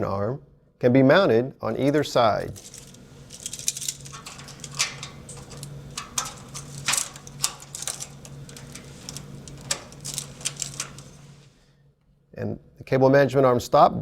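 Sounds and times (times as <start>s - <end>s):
low steady hum: 1.5s - 12.9s
sharp metal clicks and clatter: 2.6s - 11.5s.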